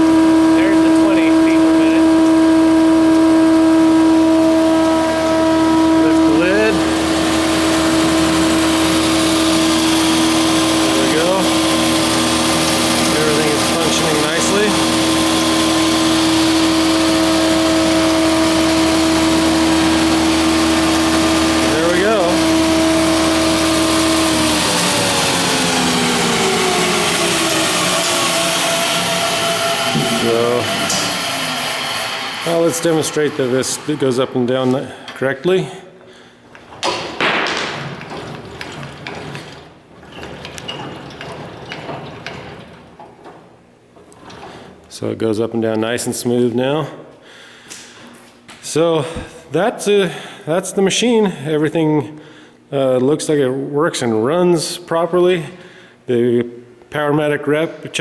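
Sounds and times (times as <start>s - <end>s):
planer running: 0.0s - 35.1s, 36.8s - 43.4s.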